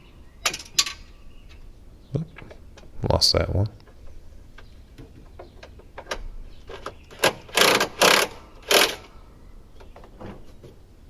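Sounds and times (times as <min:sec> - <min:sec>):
ratcheting tool tightening bolts: 0:05.6 - 0:09.1.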